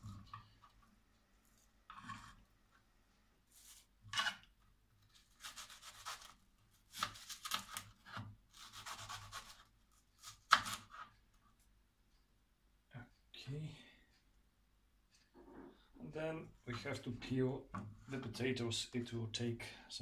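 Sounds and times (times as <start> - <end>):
knife slicing onion on board: 6.9 - 9.6, 10.2 - 11.0.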